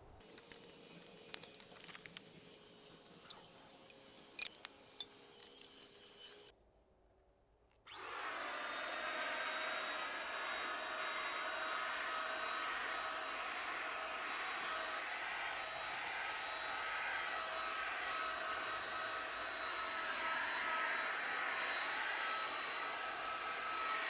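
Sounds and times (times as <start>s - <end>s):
electric paint spray gun running: 7.9s - 24.0s.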